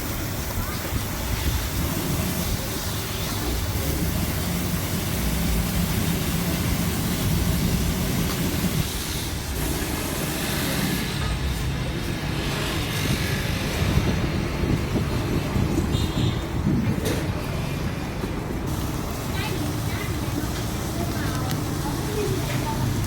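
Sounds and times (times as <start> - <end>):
street traffic: 0.0 - 23.0
vehicle engine running: 0.0 - 23.0.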